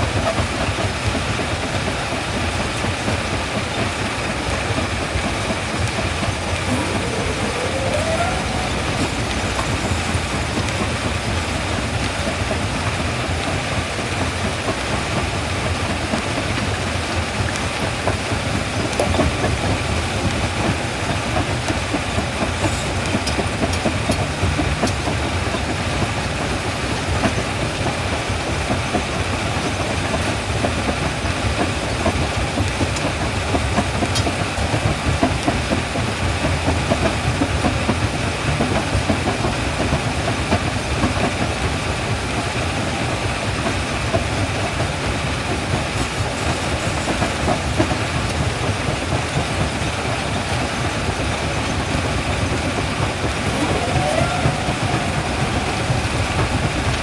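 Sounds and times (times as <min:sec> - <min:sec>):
low machine noise: 0:00.0 - 0:57.0.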